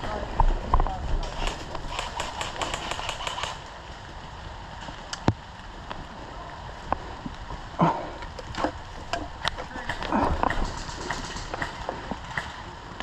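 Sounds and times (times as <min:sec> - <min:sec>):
sharp clicks: 0:01.2 - 0:03.7, 0:08.4 - 0:12.6.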